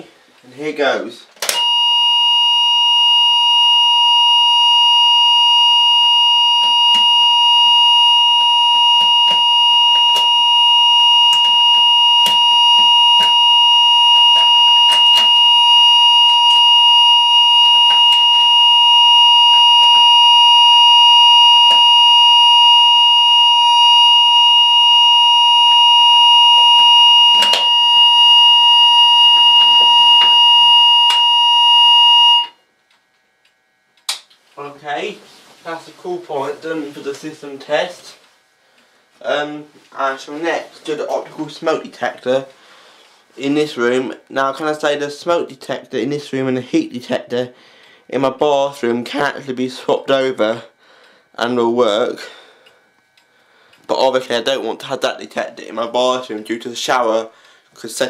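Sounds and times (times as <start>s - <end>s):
fire alarm continuous tone: 1.4s - 32.7s, 47.1s - 57.7s.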